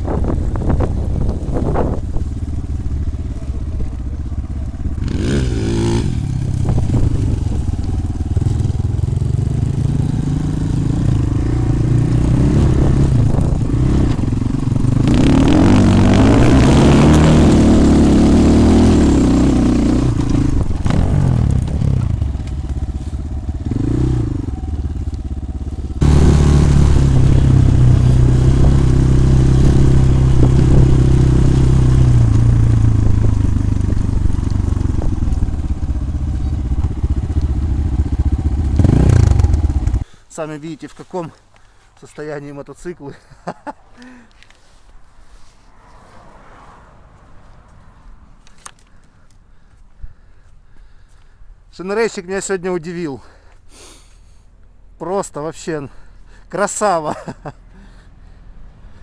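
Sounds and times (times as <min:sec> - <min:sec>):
motorcycle engine revving: 0:00.2 - 0:40.1.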